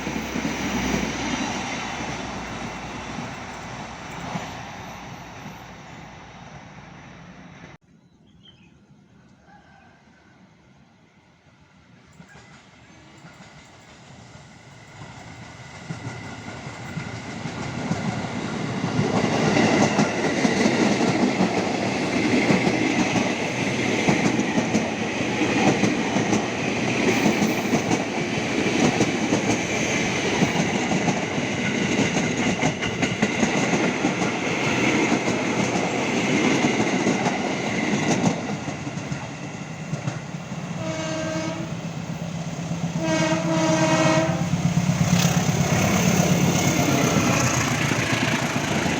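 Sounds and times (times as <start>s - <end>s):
train wheels clattering on rails: 12.1s - 41.3s, 42.7s - 48.9s
train horn blasts: 40.7s - 41.9s, 42.9s - 44.7s.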